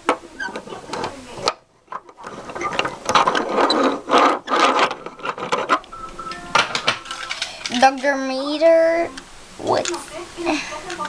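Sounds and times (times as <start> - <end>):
toy cars clattering: 0.1 - 5.9, 6.6 - 8.2.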